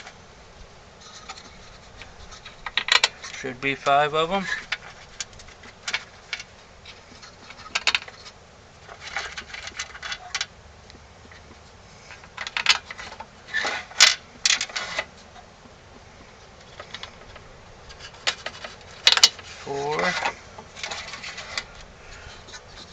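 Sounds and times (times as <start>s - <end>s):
metal screws clicking and rattling: 1.3s - 3.4s, 12.2s - 15.1s, 16.7s - 21.8s.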